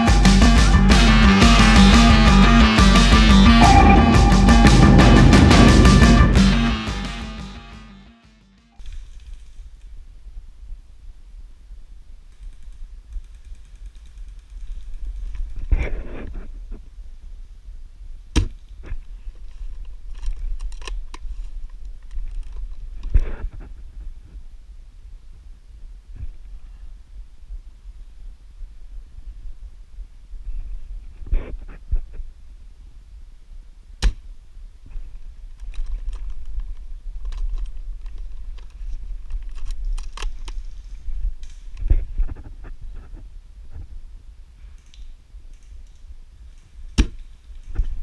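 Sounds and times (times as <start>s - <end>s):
steady low rumble: 3.2s - 7.6s.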